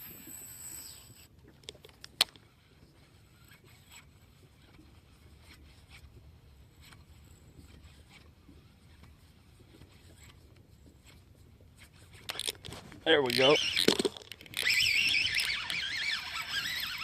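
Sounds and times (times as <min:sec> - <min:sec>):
handling noise: 0:12.3 - 0:15.5.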